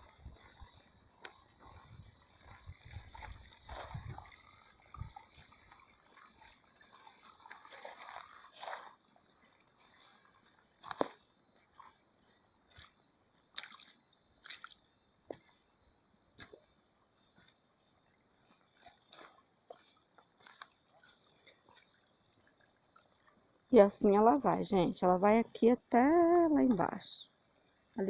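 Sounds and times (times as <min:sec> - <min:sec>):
footsteps on forest floor: 0:00.0 - 0:09.1
crickets chirping: 0:00.0 - 0:28.0.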